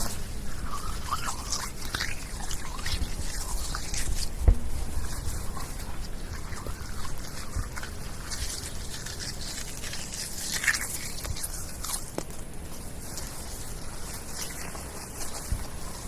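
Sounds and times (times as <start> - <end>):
wet mud squelching: 0.0 - 16.0.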